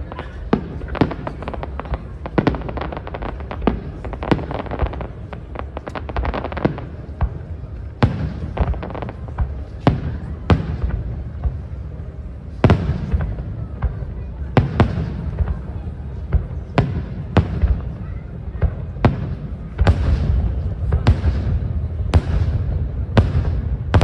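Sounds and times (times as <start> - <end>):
rumble of echoes: 0.0 - 24.0
aerial fireworks exploding: 12.6 - 24.0.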